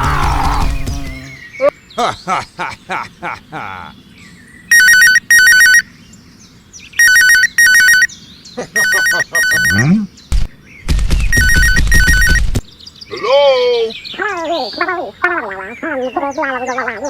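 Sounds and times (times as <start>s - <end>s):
telephone ringing: 4.7s - 5.8s, 7.0s - 8.1s, 8.8s - 9.8s, 11.3s - 12.5s.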